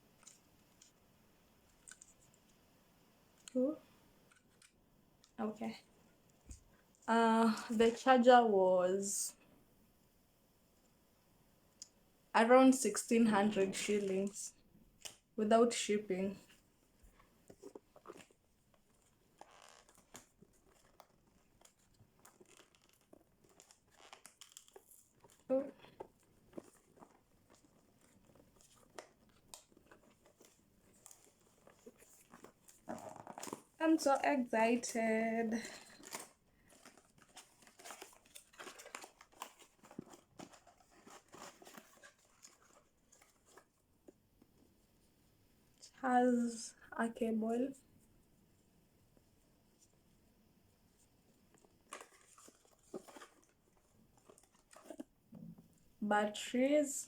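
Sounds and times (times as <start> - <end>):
packaging clicks and rustles: 17.4 - 43.9, 51.5 - 55.1.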